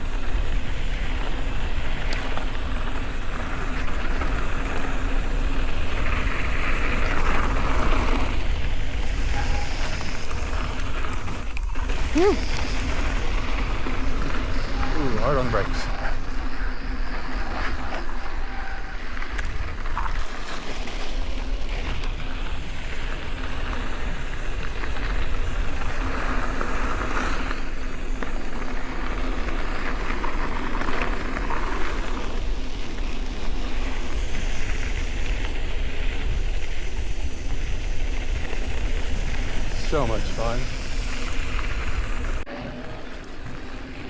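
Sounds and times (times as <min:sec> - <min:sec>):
bike rattling over dirt trail: 0:00.0 - 0:44.0
wind buffeting microphone: 0:21.6 - 0:42.5.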